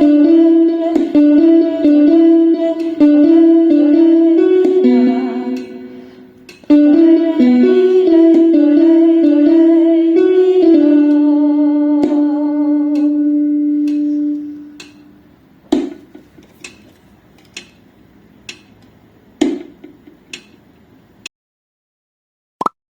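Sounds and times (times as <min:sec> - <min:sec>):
metronome clicks: 0:04.6 - 0:05.8, 0:06.4 - 0:07.1, 0:12.9 - 0:15.1, 0:17.4 - 0:17.8, 0:18.4 - 0:18.9, 0:20.3 - 0:20.6.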